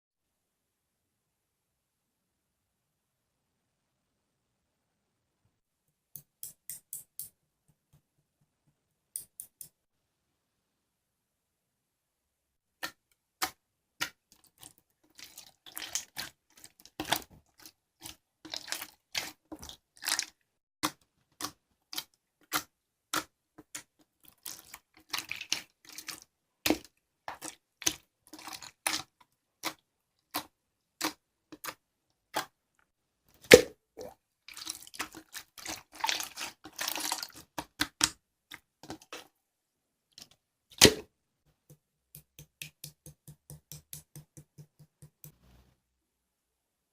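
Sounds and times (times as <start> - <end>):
sharp clicks and taps: 6.1 - 9.9, 41.6 - 45.4.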